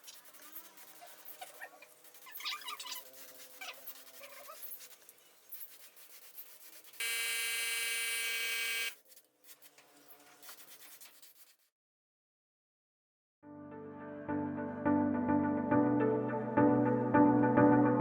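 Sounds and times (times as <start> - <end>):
loud electric buzzing tone: 7.0 - 9.0.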